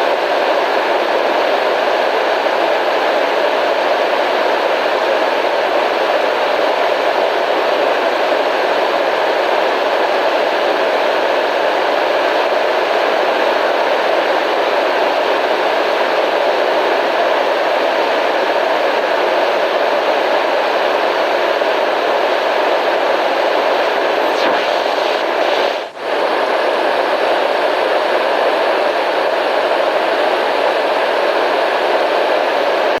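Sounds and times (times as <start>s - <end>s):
white noise hiss: 22.1s - 32.8s.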